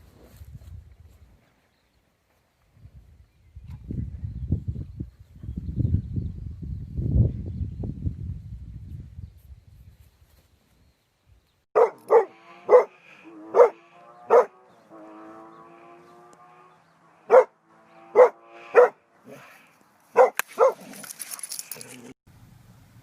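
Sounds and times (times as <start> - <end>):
dog barking: 11.8 - 14.6, 17.3 - 19.5, 20.1 - 20.9.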